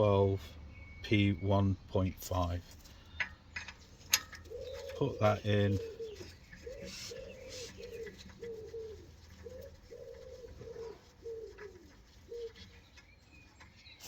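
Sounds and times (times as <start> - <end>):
pigeon cooing: 4.1 - 14.0.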